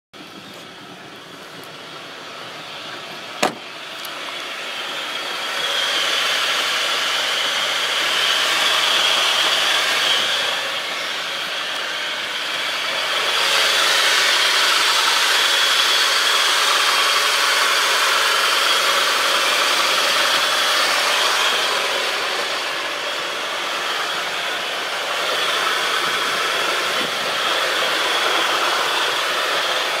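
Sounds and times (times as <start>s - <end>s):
squeaking drivetrain whine: 0.2s - 30.0s.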